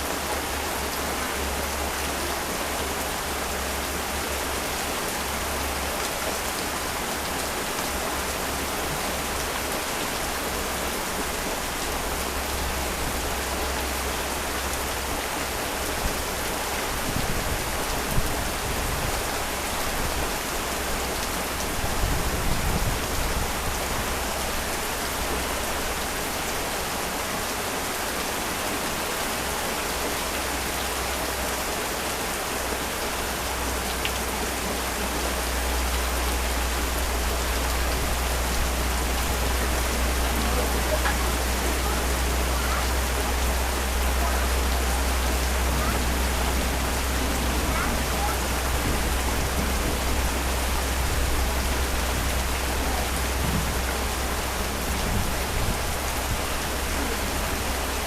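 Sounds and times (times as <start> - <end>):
heavy rain: 0.0 - 58.0
low rumbles: 34.6 - 58.0.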